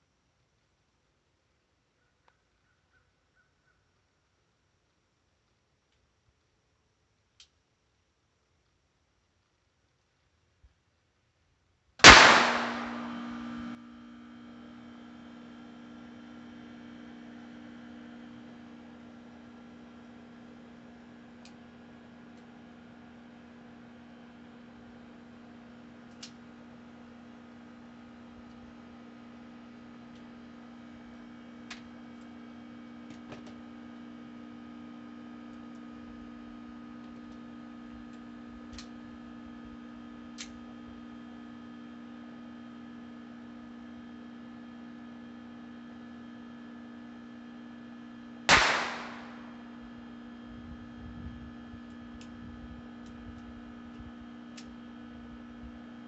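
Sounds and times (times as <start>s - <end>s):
steady low hum: 6.4s - 56.0s
pistol shot: 12.0s - 13.7s, 48.5s - 49.8s.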